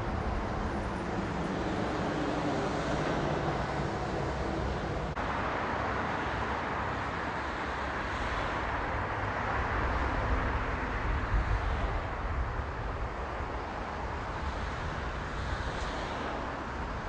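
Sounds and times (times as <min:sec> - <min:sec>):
vehicle engine rumble: 0:00.0 - 0:05.8.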